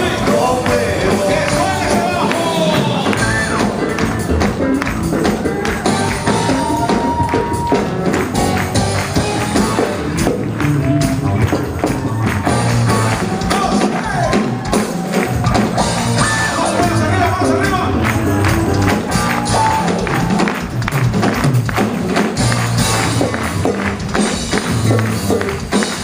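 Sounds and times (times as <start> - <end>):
person singing: 0.0 - 4.2
percussion beat: 0.0 - 26.0.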